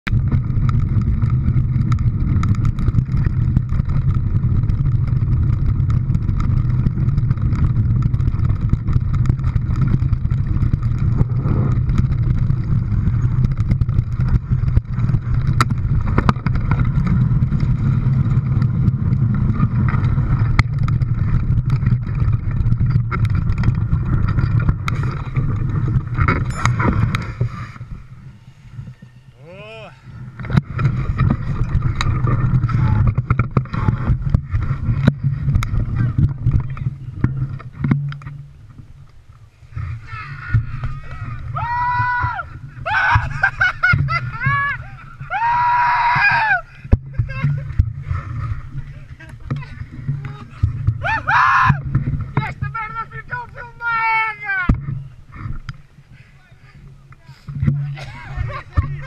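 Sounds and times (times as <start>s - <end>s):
small engine knocks: 0.1s - 27.5s
engine running steadily: 0.1s - 45.4s, 54.6s - 59.0s.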